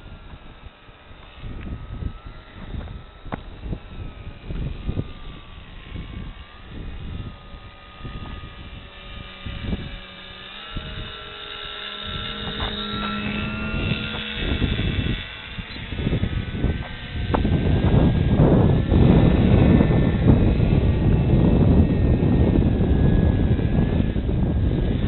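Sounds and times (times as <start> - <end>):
gusty wind rumble: 0.0 - 25.0
model airplane motor whine: 0.0 - 25.0.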